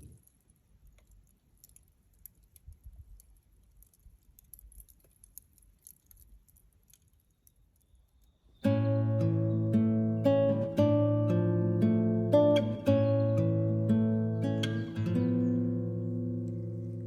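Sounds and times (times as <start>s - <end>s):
faint ticks and clicks: 0.0s - 8.6s.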